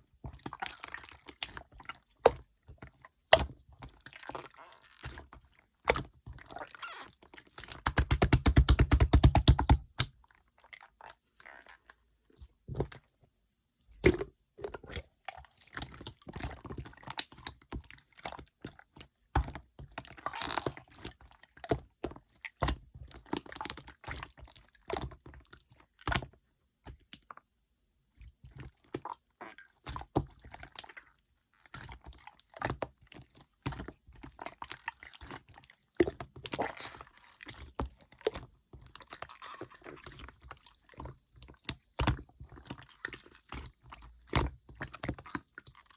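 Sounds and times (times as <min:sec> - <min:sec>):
slime squished by hand: 0:07.6 - 0:10.1, 0:35.6 - 0:45.9.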